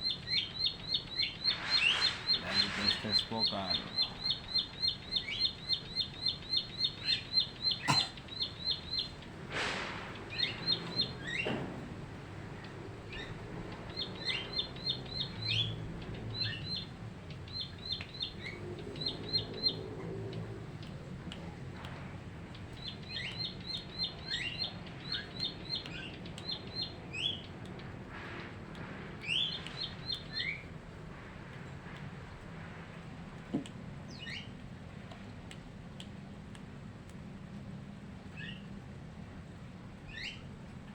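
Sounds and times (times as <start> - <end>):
bird singing rapid high chirps: 0.0 - 9.3, 10.2 - 11.5, 13.1 - 19.9, 22.7 - 27.5.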